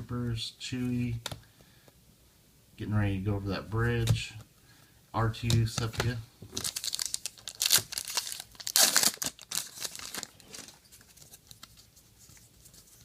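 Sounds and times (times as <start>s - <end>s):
card pack wrapper tearing: 6.6s - 11.8s.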